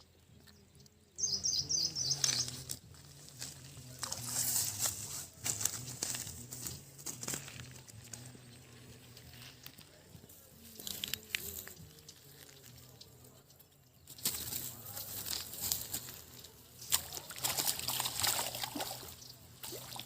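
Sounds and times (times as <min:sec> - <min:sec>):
water splashing and sloshing: 0:16.8 - 0:20.0.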